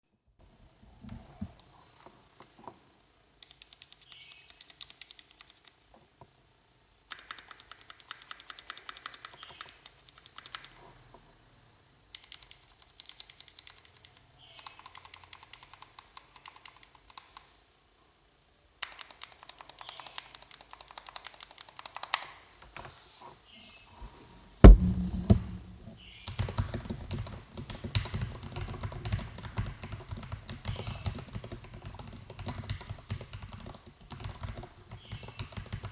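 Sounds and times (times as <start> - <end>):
mechanical keyboard typing: 3.4 - 5.8, 7.1 - 10.8, 12.1 - 17.5, 18.8 - 22.3, 26.3 - 35.9
loud thump: 24.6 - 26.0.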